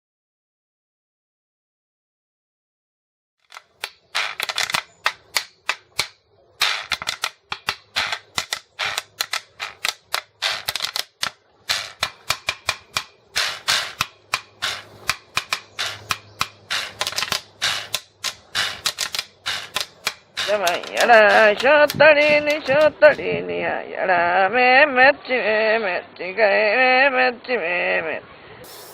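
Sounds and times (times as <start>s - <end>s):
hand percussion strikes: 10.2s - 23.2s.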